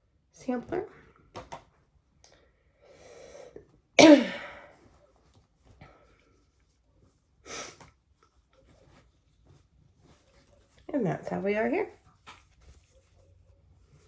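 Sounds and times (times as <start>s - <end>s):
woman coughing: 4.0s - 4.6s.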